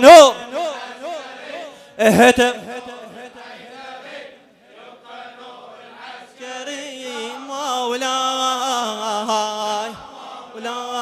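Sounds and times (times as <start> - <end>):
man chanting a mourning lament: 0.0 - 3.3.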